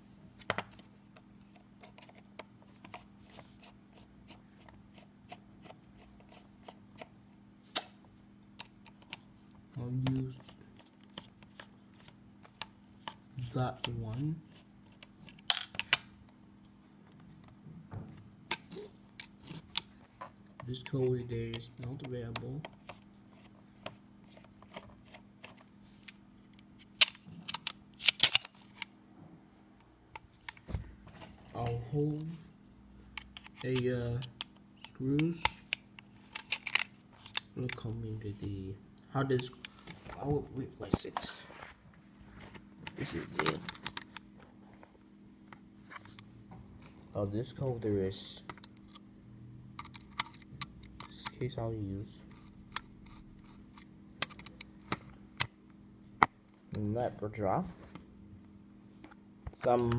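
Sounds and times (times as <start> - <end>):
small clicks of parts handled: 25.4 - 28.9, 33.1 - 37.9.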